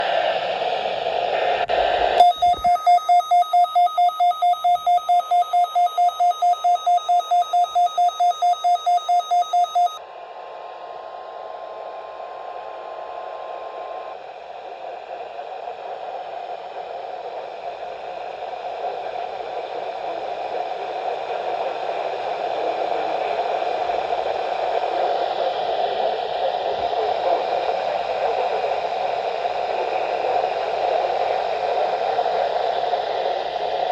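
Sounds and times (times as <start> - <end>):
faint steady tone: 2.2 - 10.0
loud pulsing alert beeps: 2.2 - 10.0.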